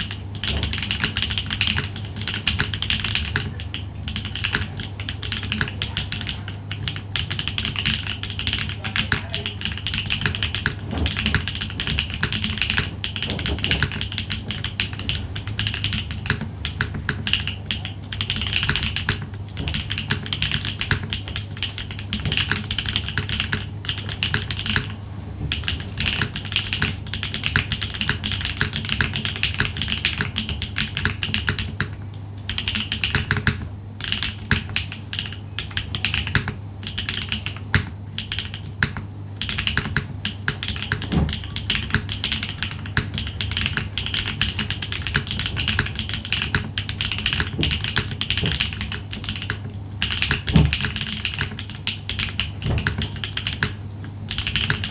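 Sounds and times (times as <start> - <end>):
mechanical keyboard typing: 0.0 - 54.9.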